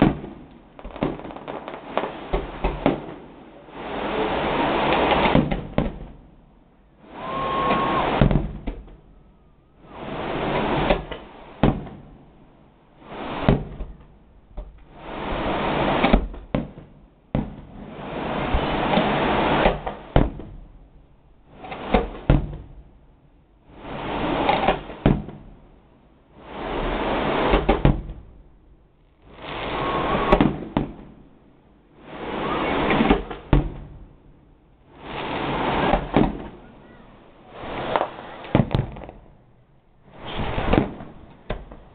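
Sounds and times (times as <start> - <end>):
sharp firework bangs: 0.0 - 6.2, 7.0 - 8.9, 9.8 - 12.2, 13.0 - 14.0, 15.2 - 20.7, 29.2 - 31.3, 34.9 - 39.3, 40.0 - 41.8
rumbling firework booms: 0.0 - 6.4, 7.0 - 9.1, 9.8 - 14.0, 14.9 - 20.8, 29.2 - 31.4, 34.8 - 36.8, 37.4 - 41.9.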